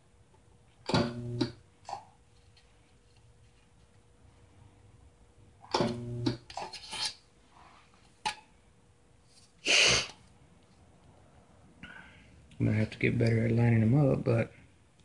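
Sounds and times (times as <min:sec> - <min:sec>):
spot welder buzzing hum: 0:00.7 - 0:02.0, 0:05.6 - 0:06.6
hissing burst: 0:09.6 - 0:10.2.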